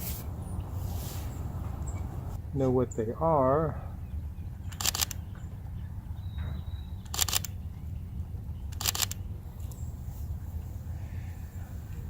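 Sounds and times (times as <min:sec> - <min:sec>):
camera shutter bursts: 0:04.7 - 0:05.2, 0:07.1 - 0:07.6, 0:08.7 - 0:09.2.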